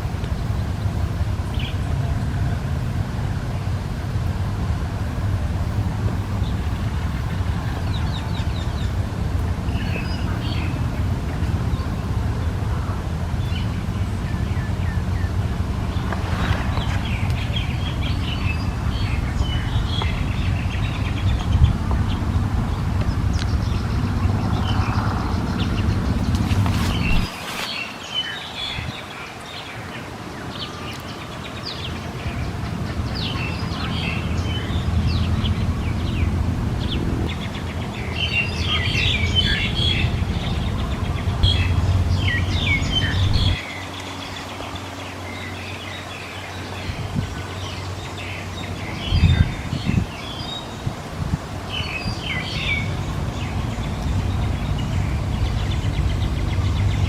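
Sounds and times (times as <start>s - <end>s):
steady low rumble: 0.0s - 27.6s, 31.8s - 57.0s
bird chirping: 30.6s - 50.8s.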